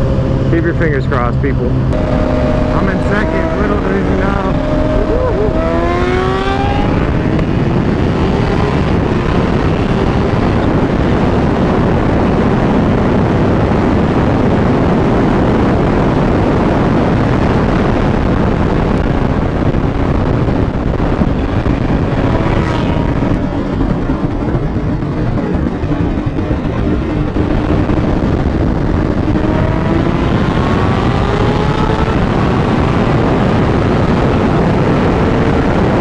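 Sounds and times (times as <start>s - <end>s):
motorcycle engine accelerating: 0.0s - 36.0s
wind noise on microphone: 0.0s - 36.0s.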